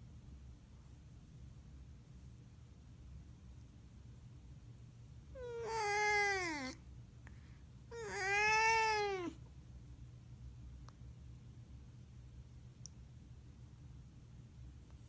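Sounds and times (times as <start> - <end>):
cat meowing long: 5.4 - 6.8, 7.9 - 9.4.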